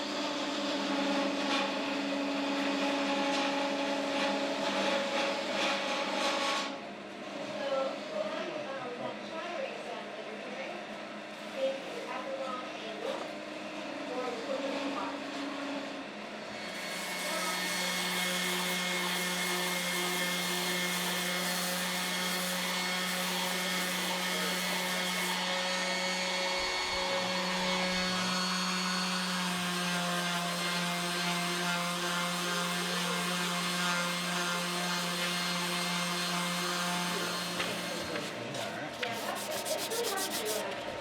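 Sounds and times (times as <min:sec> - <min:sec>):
wood lathe motor hum: 0:00.0 - 0:06.8, 0:13.7 - 0:40.9
hiss of wood being worked: 0:16.7 - 0:27.3, 0:39.0 - 0:40.7.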